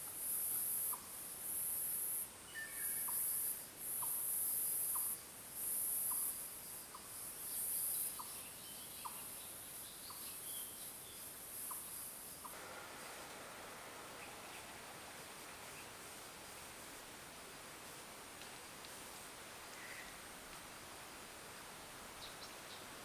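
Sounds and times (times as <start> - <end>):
soft rustling hiss: 0.0 - 23.0
faint bird calls: 19.7 - 20.3.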